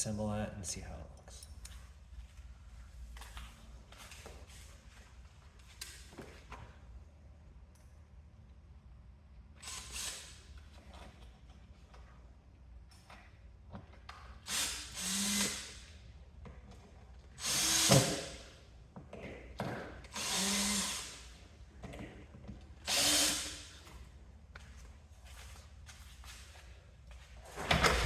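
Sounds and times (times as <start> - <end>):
power drill driving screws: 9.6 - 10.6, 14.4 - 15.8, 17.4 - 18.5, 20.0 - 21.3, 22.8 - 23.8.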